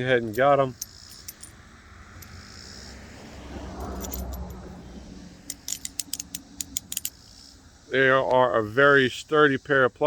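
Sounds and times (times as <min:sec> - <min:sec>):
metallic clicks and clinks: 0:00.2 - 0:01.6, 0:03.8 - 0:04.6, 0:05.4 - 0:07.5.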